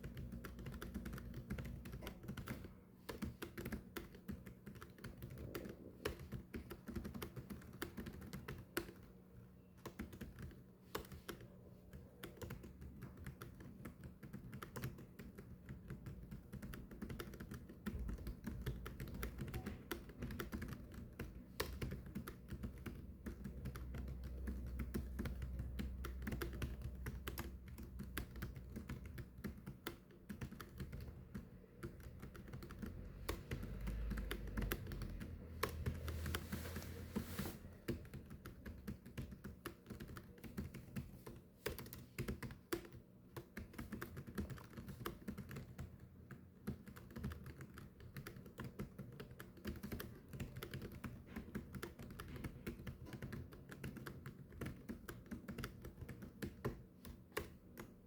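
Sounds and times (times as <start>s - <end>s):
keyboard typing clicks: 0.0s - 36.5s, 37.8s - 58.0s
faint low hum: 0.0s - 58.0s.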